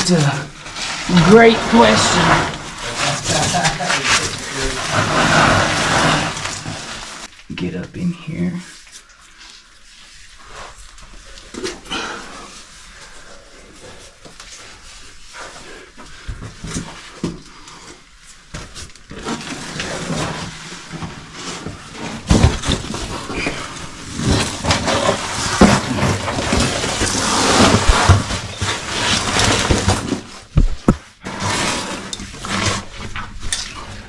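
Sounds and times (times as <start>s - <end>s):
body and gear scraping rock: 0.0s - 7.3s, 19.1s - 34.0s.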